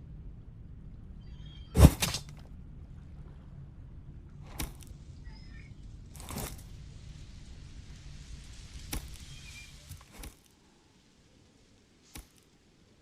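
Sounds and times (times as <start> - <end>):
spear hitting target: 1.8 - 2.4, 4.5 - 4.9.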